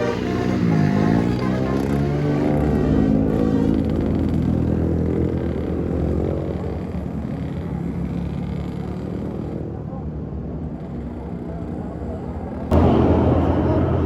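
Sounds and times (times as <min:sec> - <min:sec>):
bus diesel engine droning: 0:00.0 - 0:14.0.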